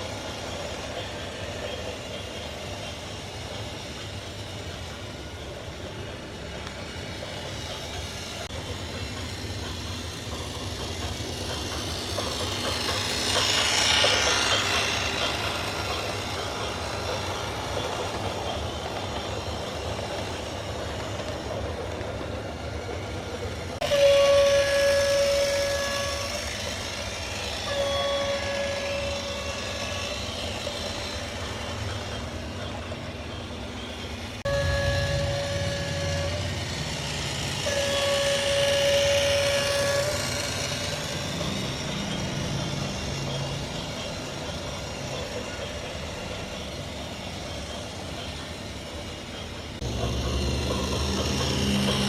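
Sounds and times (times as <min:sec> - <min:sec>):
long horn blasts: 0:34.5 - 0:36.7, 0:37.6 - 0:40.3.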